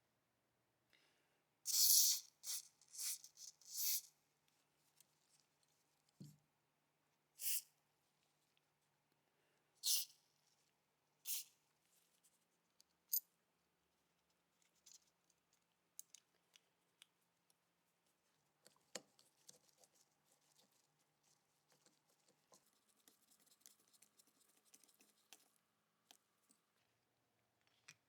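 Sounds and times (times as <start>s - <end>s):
clicks and taps of hand work: 18.6s - 19.6s.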